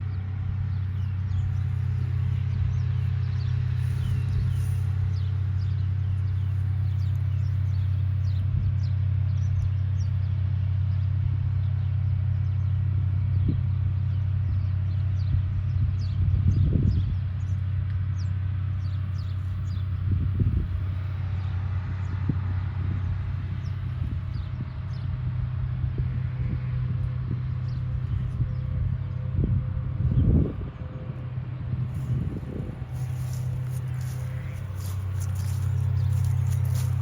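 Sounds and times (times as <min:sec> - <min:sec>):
birds chirping: 0:00.0 - 0:10.2, 0:32.0 - 0:37.0
low rumble: 0:00.0 - 0:17.5, 0:18.2 - 0:37.0.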